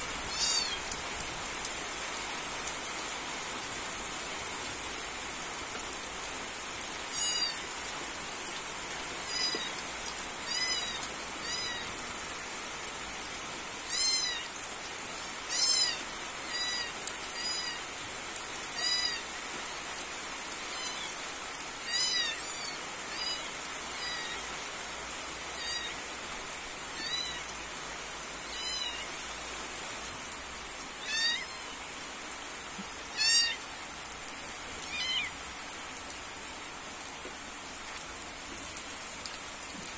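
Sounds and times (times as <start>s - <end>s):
steady rain falling: 0.0s - 39.9s
animal high calls: 10.5s - 11.9s, 13.9s - 14.5s, 15.5s - 17.8s, 18.8s - 19.3s, 21.8s - 24.5s, 25.6s - 26.0s, 31.0s - 31.8s, 33.1s - 33.6s, 34.9s - 35.4s.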